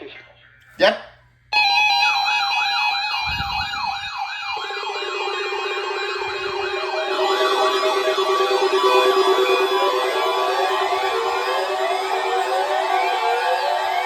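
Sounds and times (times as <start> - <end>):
electronic alarm tones: 1.6 - 14.0
lower alarm tone: 1.6 - 14.0
siren-like yelp: 1.6 - 14.0.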